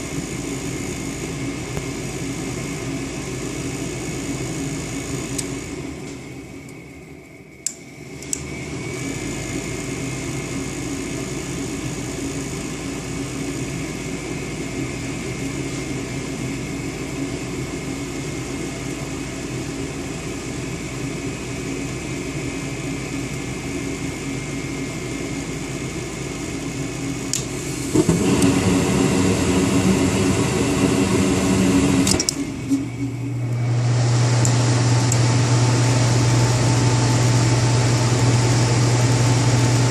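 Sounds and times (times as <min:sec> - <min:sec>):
furnace humming: 0:00.0 - 0:39.9
strong low hum: 0:27.6 - 0:39.9.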